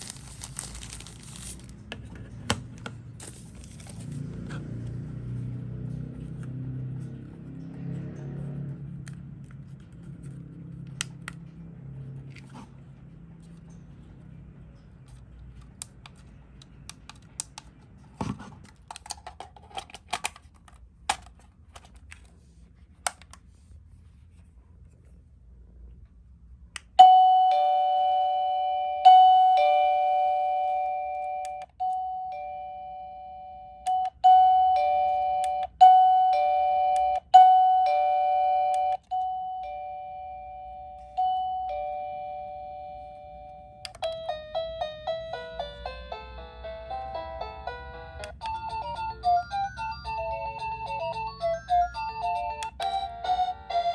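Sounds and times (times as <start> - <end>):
two-tone ding-dong doorbell chime: 27.0 - 47.8, 48.5 - 53.9
doorbell melody: 27.0 - 53.9.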